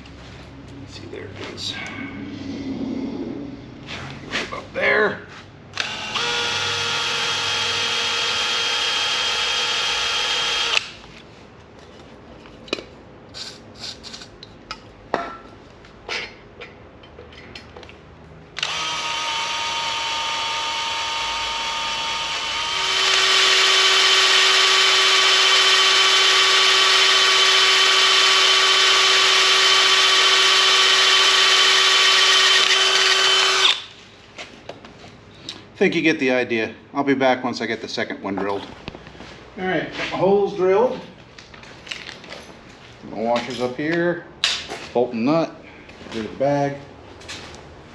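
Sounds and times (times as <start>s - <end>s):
power drill boring metal: 5.8s - 11.0s, 18.6s - 33.9s.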